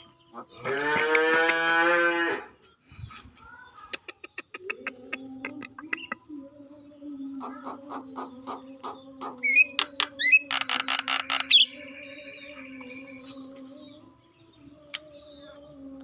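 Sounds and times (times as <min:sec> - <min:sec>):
bird harsh rattling call: 0:09.9 - 0:11.7.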